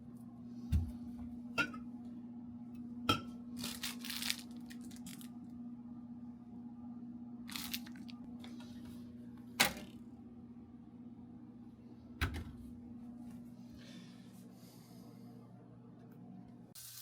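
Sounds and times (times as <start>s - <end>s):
low electrical hum: 0.0s - 17.0s
packaging rustling: 3.6s - 5.3s, 7.5s - 8.1s.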